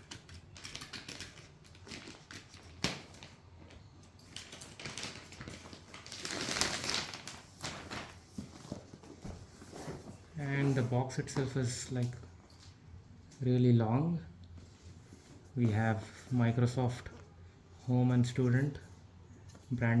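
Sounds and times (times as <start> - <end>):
cardboard and paper rustling: 0.0 - 11.4.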